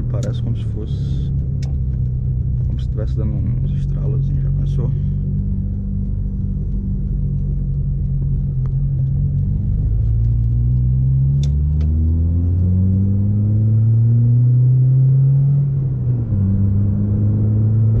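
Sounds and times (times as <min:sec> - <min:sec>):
car engine droning under acceleration: 0:00.0 - 0:18.0
sharp clicks: 0:04.6 - 0:12.0.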